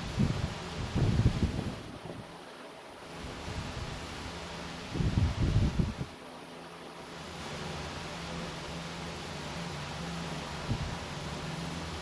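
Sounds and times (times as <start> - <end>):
background hiss: 0.0 - 12.0.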